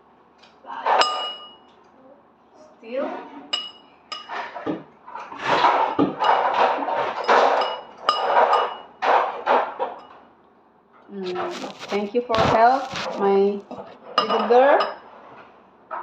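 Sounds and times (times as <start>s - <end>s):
clinks against bowl: 0.9s - 1.7s, 3.5s - 4.4s, 14.2s - 15.0s
utensil stirring and scraping bowl: 3.1s - 10.1s, 11.2s - 15.5s.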